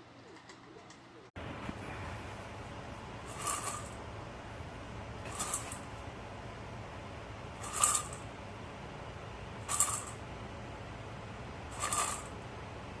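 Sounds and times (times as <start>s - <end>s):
pet feeder dispensing kibble: 3.2s - 4.0s, 5.2s - 5.9s, 7.6s - 8.3s, 9.6s - 10.2s, 11.7s - 12.4s.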